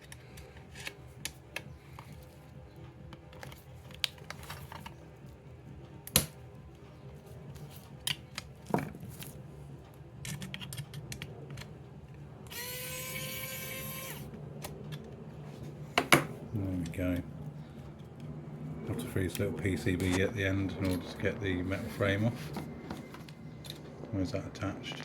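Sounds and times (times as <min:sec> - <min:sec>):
electric screwdriver whirring: 0:12.5 - 0:14.3.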